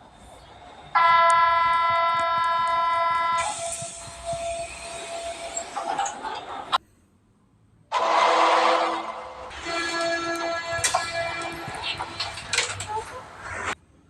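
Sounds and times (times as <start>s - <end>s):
train running: 0.0s - 6.8s, 7.9s - 14.0s
train horn: 7.9s - 12.4s.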